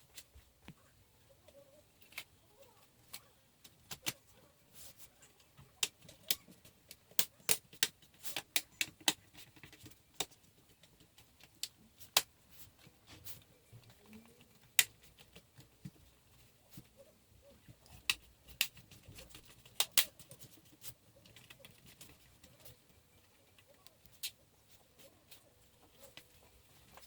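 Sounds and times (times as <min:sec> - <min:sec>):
tools clicking on laptop parts: 0:05.8 - 0:12.3, 0:17.9 - 0:22.8.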